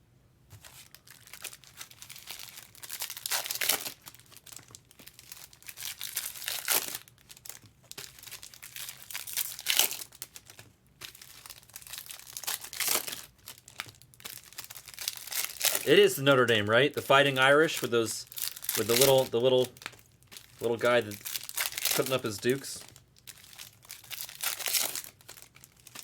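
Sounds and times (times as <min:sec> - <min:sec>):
foil wrappers tearing and crinkling: 0:00.6 - 0:26.0.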